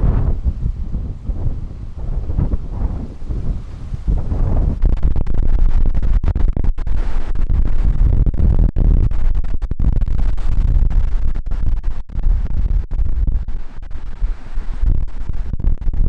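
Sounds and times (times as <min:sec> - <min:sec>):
large waves on shore: 0:00.0 - 0:04.8
wind buffeting microphone: 0:00.0 - 0:16.0.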